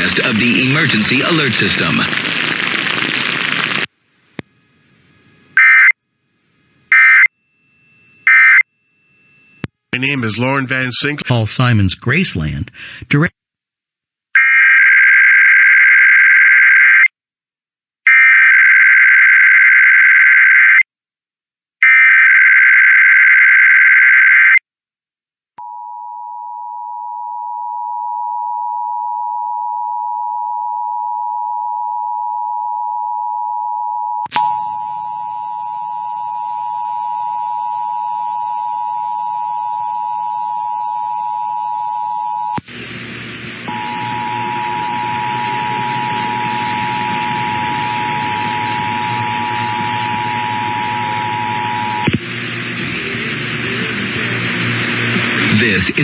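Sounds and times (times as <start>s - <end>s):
static-like noise: 0.0s - 7.3s, 42.5s - 56.0s.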